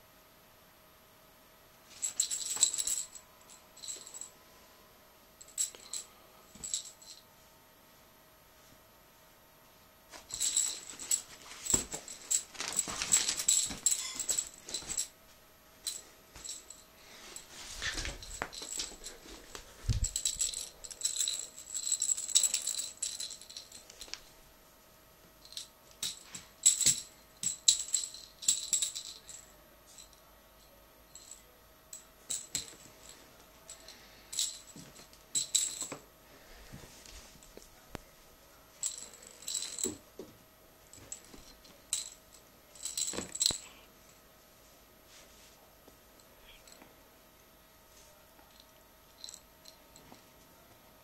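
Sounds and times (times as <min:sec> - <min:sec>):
rattling jingling toy: 0:02.0 - 0:04.3, 0:10.3 - 0:15.1, 0:15.8 - 0:24.2, 0:25.4 - 0:30.1, 0:31.1 - 0:36.0, 0:38.8 - 0:40.0, 0:40.9 - 0:42.2, 0:42.8 - 0:43.8.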